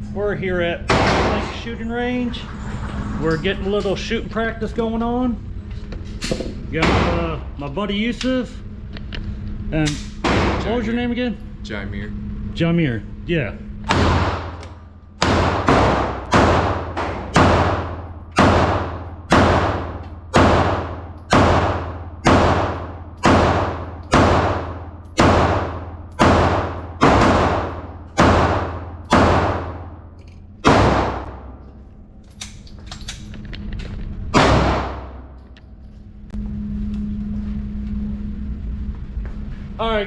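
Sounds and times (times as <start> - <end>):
gunshots with echo: 15.2 - 30.0, 30.6 - 31.6, 34.4 - 35.3.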